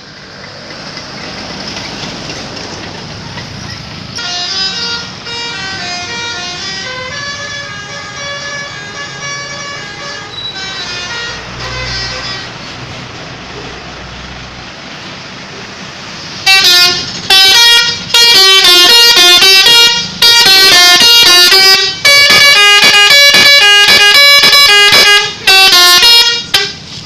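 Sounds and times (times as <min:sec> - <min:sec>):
bus air horn playing melody: 0:04.2 - 0:13.0, 0:16.4 - 0:27.0.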